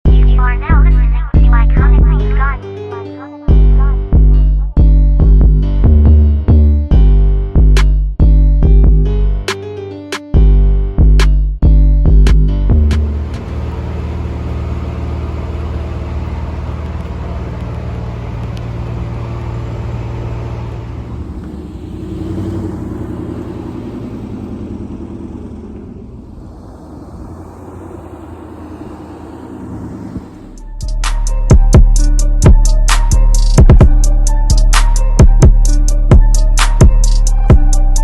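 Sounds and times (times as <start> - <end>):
vehicle engine rumbling: 11.0 - 38.0.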